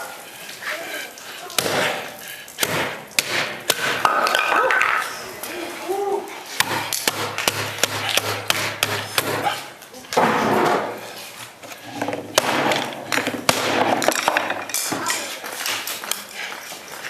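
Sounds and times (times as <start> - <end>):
people talking: 0.0 - 1.9, 4.5 - 6.5, 14.8 - 16.7
knife striking targets: 12.4 - 15.1.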